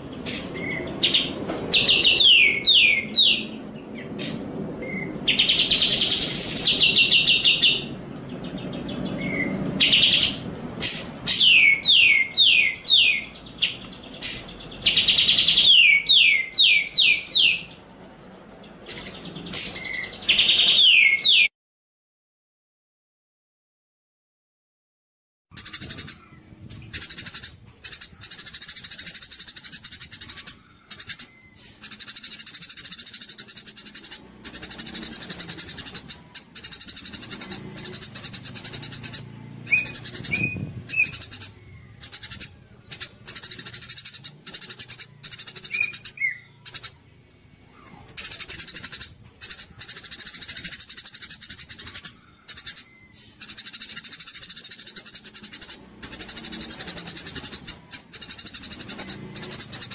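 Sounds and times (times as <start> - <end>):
low bird chirps: 25.5 - 59.9.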